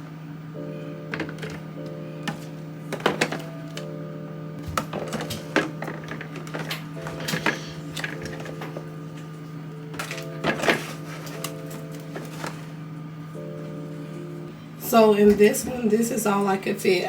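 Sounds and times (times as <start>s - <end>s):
soft background music: 0.0s - 17.0s
plastic bottles clattering: 1.0s - 12.8s.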